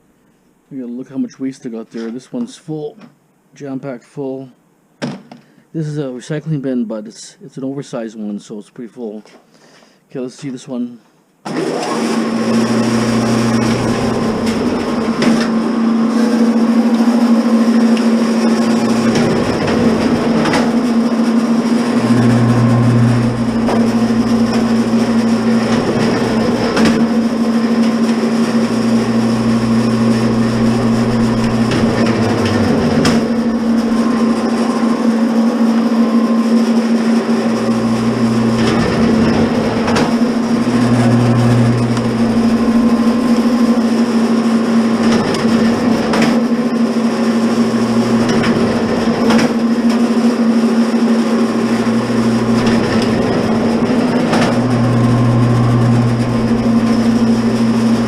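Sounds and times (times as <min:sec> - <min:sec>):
wire stripper motor humming: 0:11.5 - 0:58.0
deeper drone: 0:12.5 - 0:46.2, 0:51.5 - 0:58.0.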